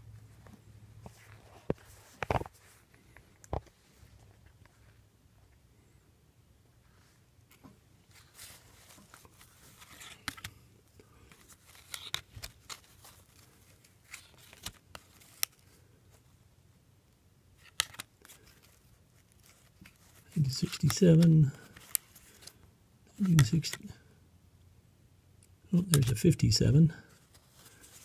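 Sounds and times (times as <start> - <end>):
paper sleeves rustling: 0.3 - 5.0, 8.0 - 16.4, 17.6 - 24.0, 25.8 - 28.0.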